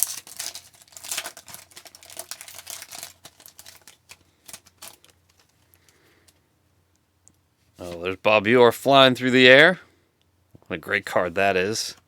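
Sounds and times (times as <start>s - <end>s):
card pack wrapper crinkling: 0.0s - 5.9s.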